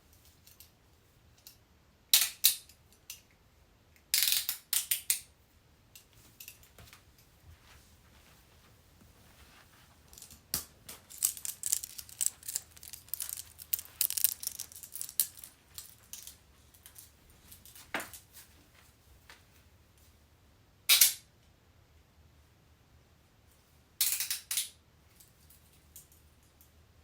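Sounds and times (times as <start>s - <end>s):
metal handcuffs clicking and jingling: 10.1s - 17.8s.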